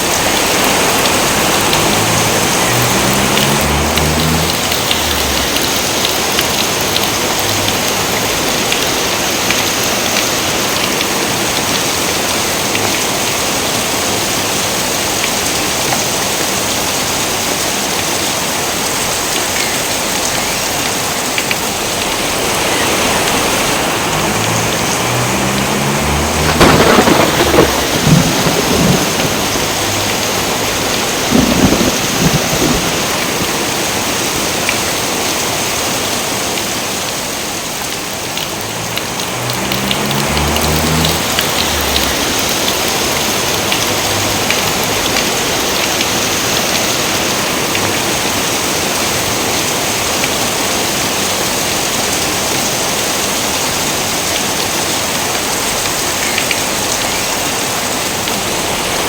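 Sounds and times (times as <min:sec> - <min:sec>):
heavy rain: 0:00.0 - 0:59.0
thunder cracking and rolling: 0:00.1 - 0:08.4, 0:24.2 - 0:34.2, 0:38.6 - 0:43.2.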